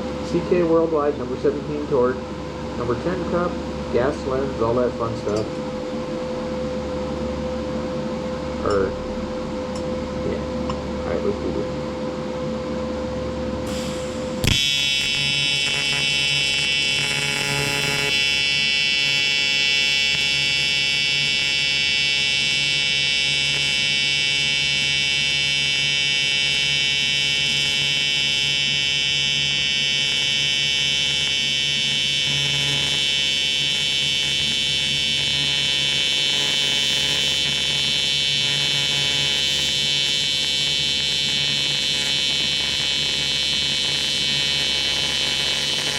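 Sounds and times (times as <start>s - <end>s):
welding arc buzzing: 13.6s - 45.9s
welding arc striking click: 13.7s - 20.4s.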